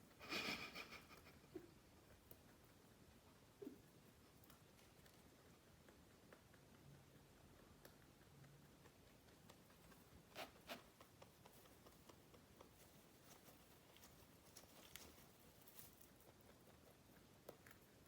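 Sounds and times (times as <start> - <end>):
rabbit rustling and ticking: 0.0 - 18.0.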